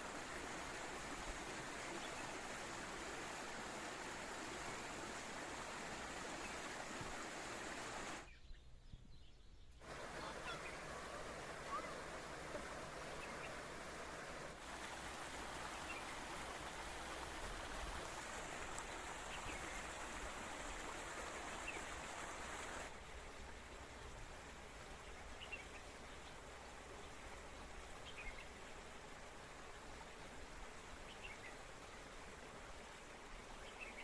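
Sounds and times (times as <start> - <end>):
stream water rushing: 0.0 - 8.3, 9.8 - 34.0.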